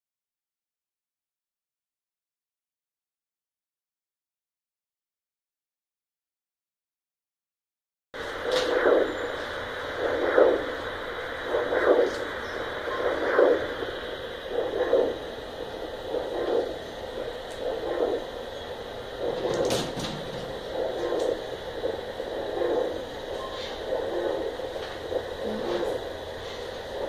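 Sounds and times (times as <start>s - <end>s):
doppler ultrasound heartbeat whooshing: 8.2s - 27.0s
steady hiss: 8.2s - 27.0s.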